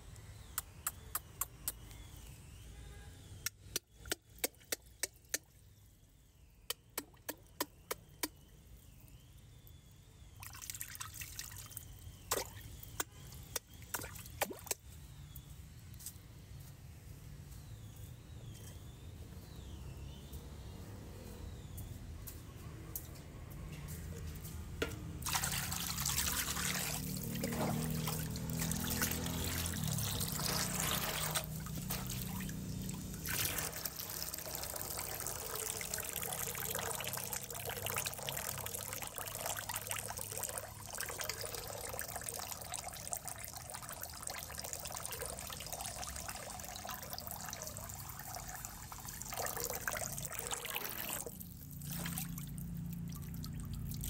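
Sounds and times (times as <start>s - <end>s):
water trickling: 25.2s - 54.0s.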